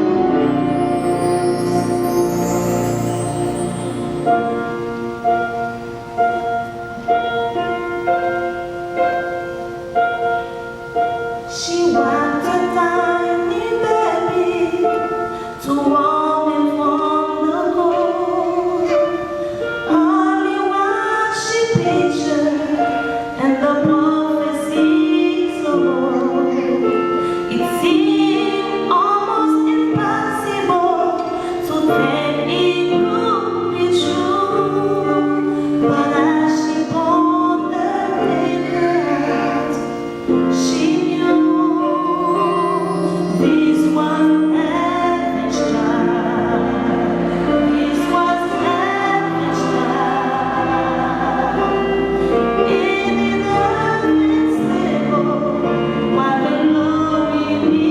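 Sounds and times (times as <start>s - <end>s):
held instrumental chords: 0.0s - 57.9s
voices singing a melody: 11.6s - 57.9s.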